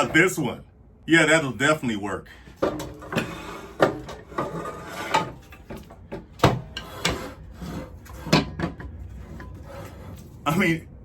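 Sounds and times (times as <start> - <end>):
saw scraping wood: 2.6 - 10.5.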